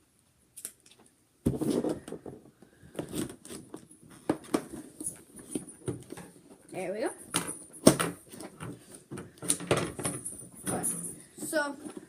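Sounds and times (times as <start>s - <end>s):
cardboard rustling and scraping: 1.5s - 6.6s.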